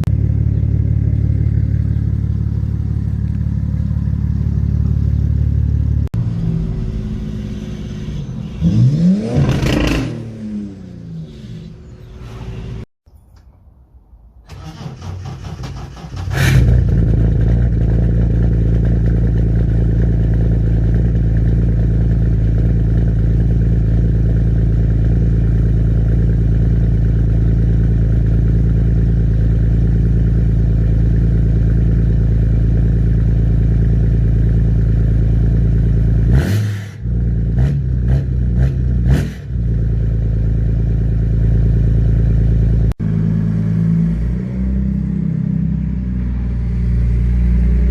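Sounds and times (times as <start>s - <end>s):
diesel engine at rev limiter: 0.0s - 12.9s, 14.5s - 47.9s
engine revving: 5.9s - 12.9s, 14.5s - 21.3s, 35.8s - 40.2s, 41.6s - 47.9s.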